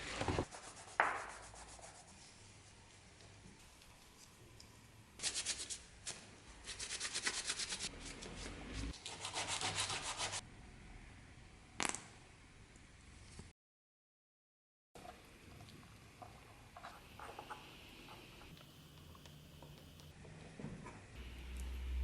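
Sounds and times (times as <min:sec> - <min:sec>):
sandpaper strokes: 0:00.4 - 0:02.3, 0:05.2 - 0:05.8, 0:06.6 - 0:10.4.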